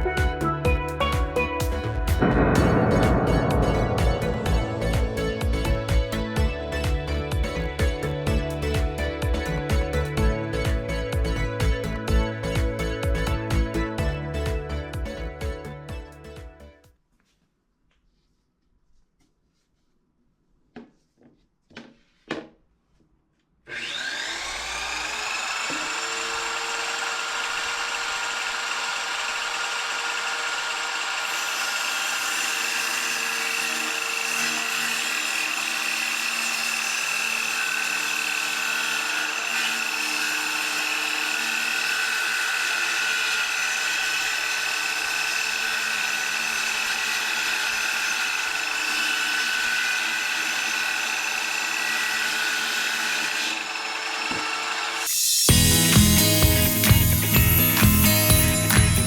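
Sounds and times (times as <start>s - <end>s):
small electric motor whining: 23.7s - 59.0s
hiss: 55.1s - 56.4s.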